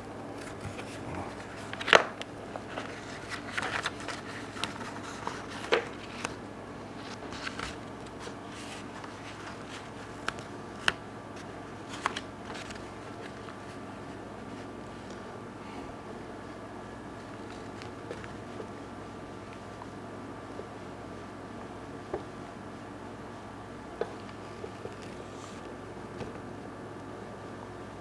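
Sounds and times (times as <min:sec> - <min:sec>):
steady low hum: 0:00.0 - 0:28.0
plastic film and paper crinkling: 0:00.4 - 0:15.2.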